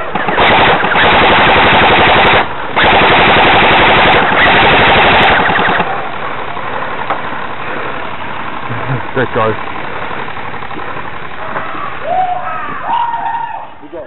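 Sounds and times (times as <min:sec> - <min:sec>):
airsoft guns firing full auto: 0:00.0 - 0:12.0.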